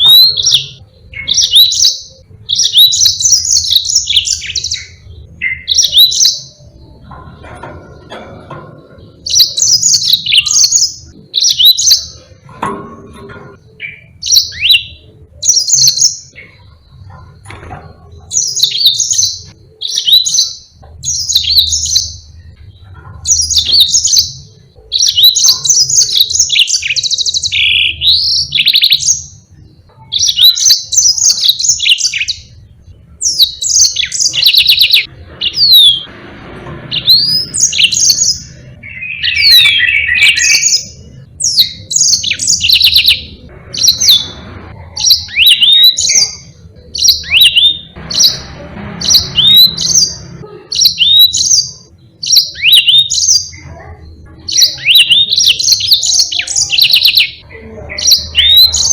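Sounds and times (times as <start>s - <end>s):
finch singing chirps and trills: 0.0s - 8.2s, 8.9s - 12.4s, 13.7s - 17.2s, 18.2s - 32.6s, 33.2s - 36.1s, 36.9s - 53.7s, 54.5s - 58.9s.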